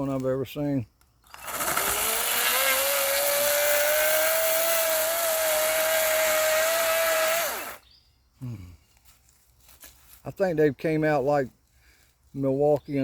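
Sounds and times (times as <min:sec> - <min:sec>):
chainsaw chain rushing: 0:01.2 - 0:07.8
electric motor whine: 0:01.3 - 0:07.8.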